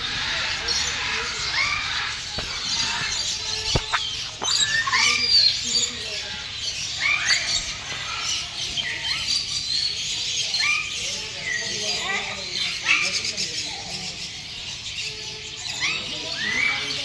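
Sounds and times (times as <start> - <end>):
birds chirping and squawking: 0.0 - 6.8
sharp clicks: 2.4 - 4.7.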